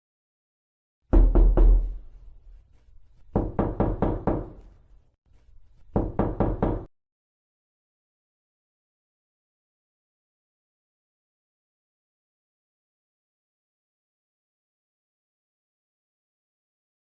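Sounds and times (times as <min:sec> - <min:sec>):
knocking on a door: 0:01.1 - 0:02.1, 0:03.3 - 0:04.6, 0:05.9 - 0:06.9.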